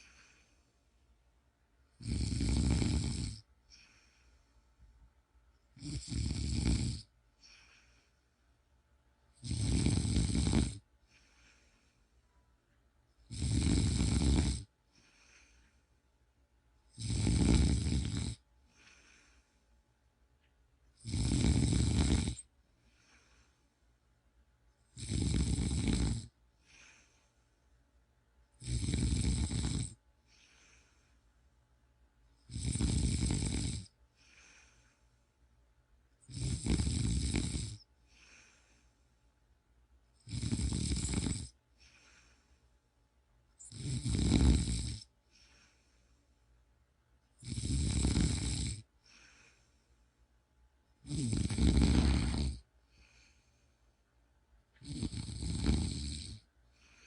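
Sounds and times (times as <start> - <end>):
faint breath: 0.0 - 1.3, 3.6 - 5.1, 7.3 - 8.7, 10.9 - 12.6, 14.8 - 16.2, 18.6 - 20.0, 22.7 - 24.1, 26.5 - 27.9, 30.2 - 31.6, 34.1 - 35.6, 37.8 - 39.4, 41.7 - 43.0, 45.2 - 46.7, 48.9 - 50.3, 52.0 - 54.2, 56.4 - 57.0
person snoring: 2.0 - 4.3, 5.8 - 8.1, 9.4 - 11.9, 13.2 - 15.7, 16.9 - 19.4, 21.0 - 23.6, 24.9 - 27.2, 28.6 - 31.1, 32.5 - 35.0, 36.2 - 38.9, 40.2 - 42.4, 43.6 - 45.9, 47.4 - 49.7, 51.0 - 53.5, 54.8 - 57.0.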